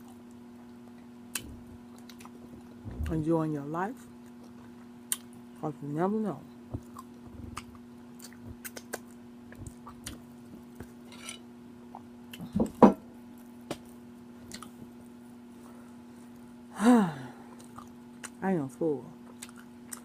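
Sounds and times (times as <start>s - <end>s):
soft chewing: 0.0s - 3.2s, 3.9s - 5.6s, 6.5s - 11.1s, 13.4s - 16.6s, 17.4s - 18.4s, 19.2s - 20.0s
steady low hum: 0.0s - 20.0s.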